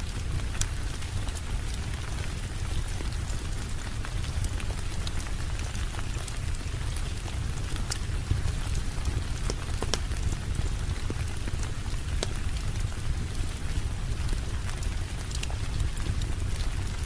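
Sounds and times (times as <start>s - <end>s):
steady rain hiss: 0.0s - 17.0s
sharp ticks and pops: 0.1s - 13.5s.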